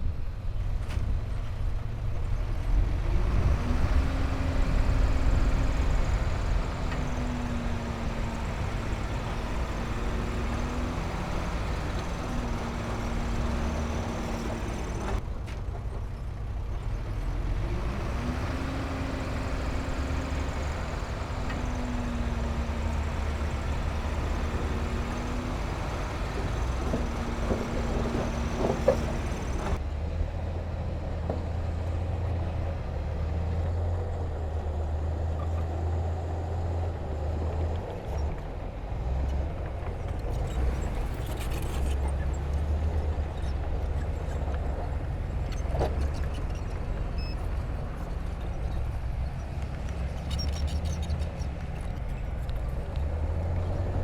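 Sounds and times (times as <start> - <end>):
heavy diesel engine rumbling: 0.0 - 54.0.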